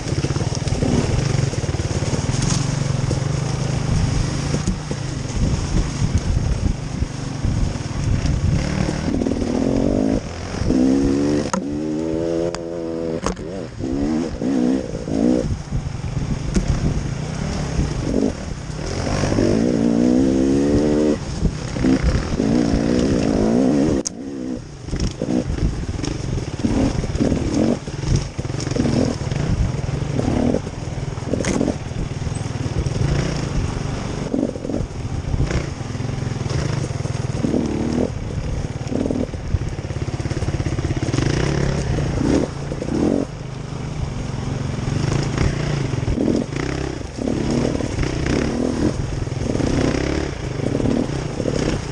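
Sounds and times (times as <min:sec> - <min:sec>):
off-road vehicle engine revving: 0:00.0 - 0:51.9.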